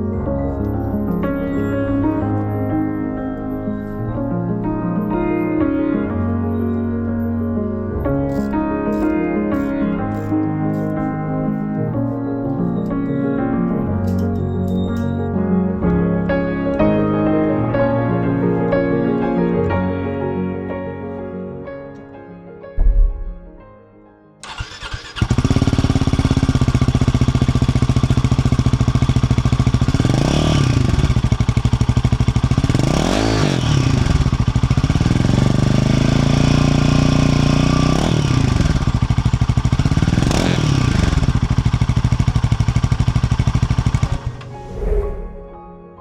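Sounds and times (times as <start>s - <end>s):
motorcycle engine idling: 24.4s - 44.4s
motorcycle engine revving: 24.4s - 44.6s.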